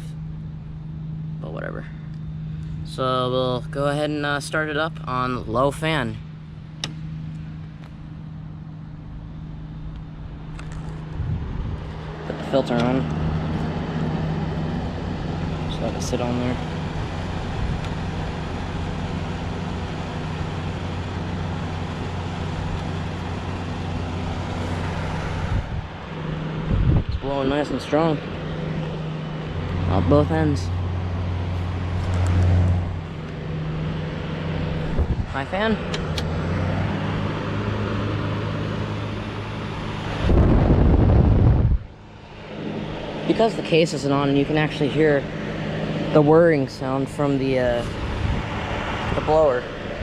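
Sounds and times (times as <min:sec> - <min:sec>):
air conditioner fan humming: 0:00.0 - 0:50.0
low rumble: 0:06.4 - 0:17.9, 0:23.2 - 0:36.8, 0:40.1 - 0:43.5.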